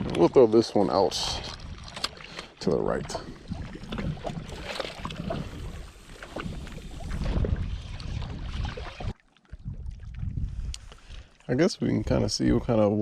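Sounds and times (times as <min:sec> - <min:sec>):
wind noise: 0:00.0 - 0:11.3
microphone handling rumble: 0:03.1 - 0:10.9.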